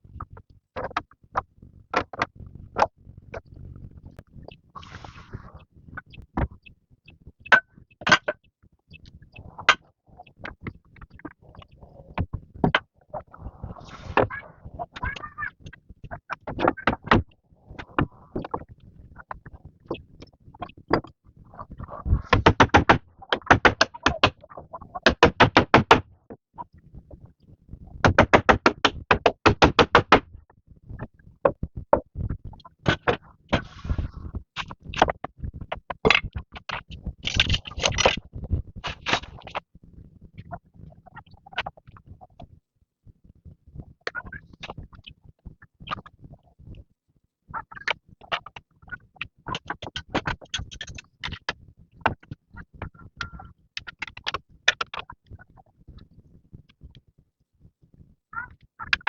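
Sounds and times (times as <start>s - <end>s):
sharp knocks and clicks: 1.9s - 2.9s, 22.3s - 24.4s, 25.0s - 26.4s, 28.0s - 30.4s
scraping noise: 13.4s - 15.4s, 33.6s - 34.3s.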